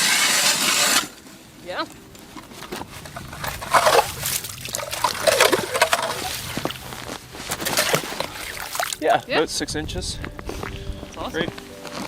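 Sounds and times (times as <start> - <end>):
water sloshing and gurgling: 2.2 - 9.1
water splashes: 2.6 - 9.2.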